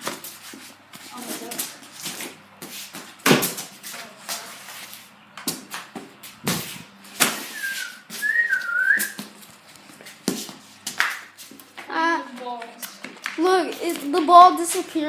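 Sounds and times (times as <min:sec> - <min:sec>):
person whistling: 0:07.5 - 0:09.2.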